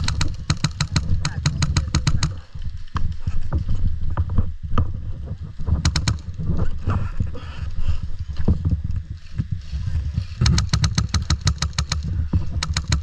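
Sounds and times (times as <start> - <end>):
airsoft gun shots: 0.0 - 2.4, 5.8 - 6.2, 10.4 - 12.0
low rumbling noise: 0.0 - 13.0.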